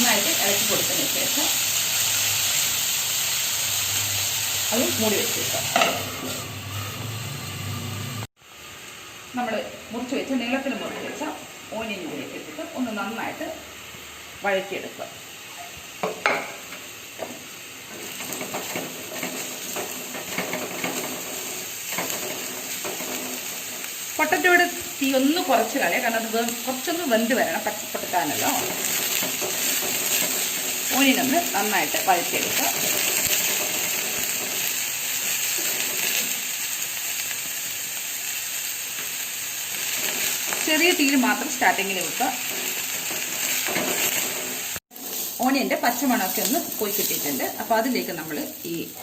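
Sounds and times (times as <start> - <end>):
onions frying in hot oil: 0.0 - 49.0
spatula scraping a wok: 5.6 - 8.0, 16.0 - 24.0, 28.1 - 36.6, 39.0 - 40.9, 42.0 - 47.6.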